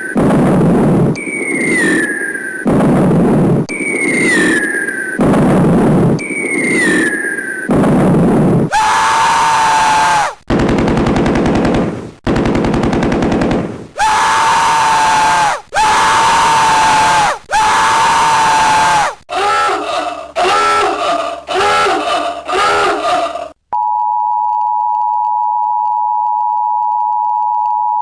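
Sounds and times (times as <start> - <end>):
harsh distorted electronic blasts: 0.0 - 8.7, 10.5 - 14.0
beeping electronic tones: 1.1 - 2.8.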